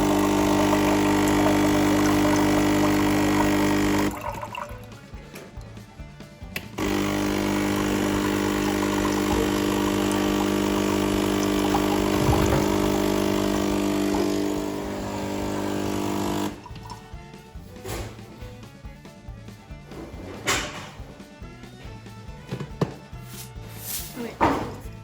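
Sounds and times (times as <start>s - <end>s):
coffee machine pump humming: 0.0s - 5.8s, 6.4s - 17.3s.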